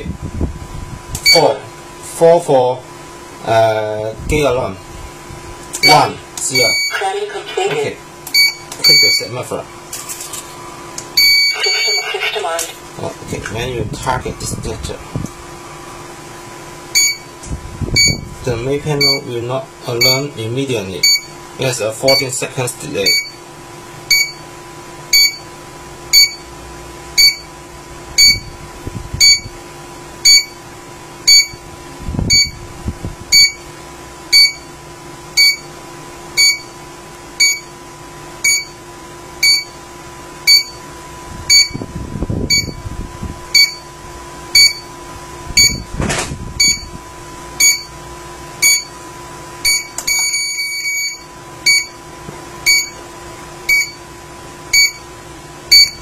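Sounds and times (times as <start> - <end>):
low electronic hum: 0.0 - 56.0
alarm panel beeping: 1.2 - 1.6, 5.8 - 7.2, 8.3 - 9.3, 11.1 - 12.1, 16.9 - 17.4, 18.0 - 18.3, 19.0 - 19.3, 20.0 - 20.3, 21.0 - 21.4, 22.1 - 22.4, 23.0 - 23.4, 24.1 - 24.4, 25.1 - 25.5, 26.1 - 26.5, 27.2 - 27.5, 28.2 - 28.6, 29.2 - 29.5, 30.2 - 30.6, 31.3 - 31.6, 32.3 - 32.6, 33.3 - 33.6, 34.3 - 34.7, 35.4 - 35.7, 36.4 - 36.8, 37.4 - 37.8, 38.4 - 38.8, 39.4 - 39.8, 40.4 - 40.8, 41.5 - 41.9, 42.5 - 42.8, 43.5 - 43.9, 44.5 - 44.9, 45.6 - 45.9, 46.6 - 46.9, 47.6 - 47.9, 48.6 - 49.0, 49.6 - 52.0, 52.6 - 53.0, 53.7 - 54.1, 54.7 - 55.1, 55.7 - 56.0.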